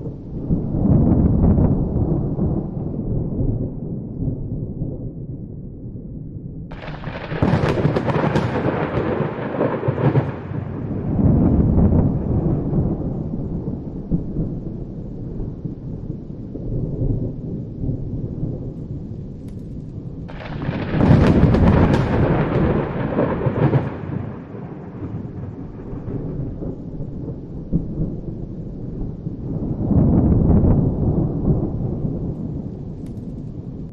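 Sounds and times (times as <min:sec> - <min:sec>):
thunder rumbling: 0:00.0 - 0:33.9
sharp thunderclap: 0:06.7 - 0:15.6, 0:19.9 - 0:33.9.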